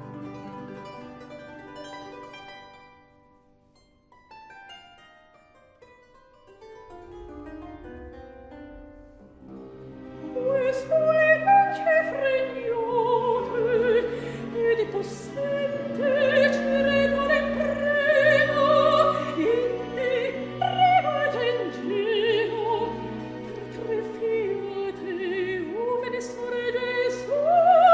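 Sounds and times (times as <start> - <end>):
string orchestra: 0.0 - 27.9
operatic soprano singing: 9.9 - 27.9.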